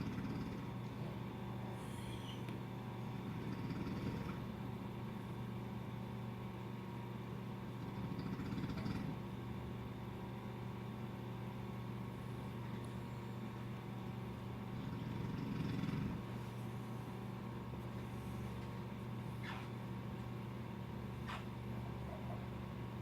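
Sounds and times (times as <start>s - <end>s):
low electrical hum: 0.0s - 23.0s
man snoring: 3.4s - 4.5s, 14.7s - 16.2s.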